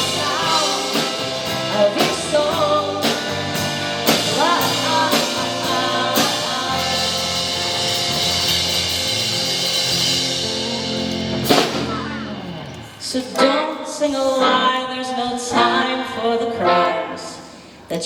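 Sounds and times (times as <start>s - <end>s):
drum hits: 0.0s - 12.7s
live rock band playing: 0.0s - 13.4s.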